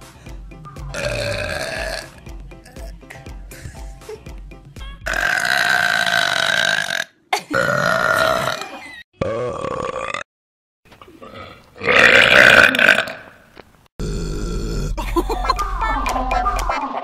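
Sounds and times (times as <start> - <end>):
music with a beat: 0.0 - 5.1, 15.2 - 17.0
person burping: 0.9 - 3.8, 5.1 - 10.3, 11.1 - 15.1.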